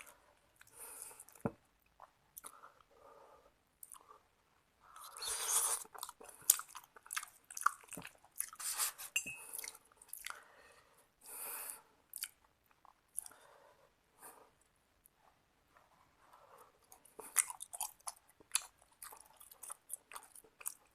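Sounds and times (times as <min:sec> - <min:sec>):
person chewing food: 0:00.0 - 0:02.9, 0:03.8 - 0:04.2, 0:04.9 - 0:10.6, 0:12.1 - 0:13.5, 0:16.2 - 0:20.9.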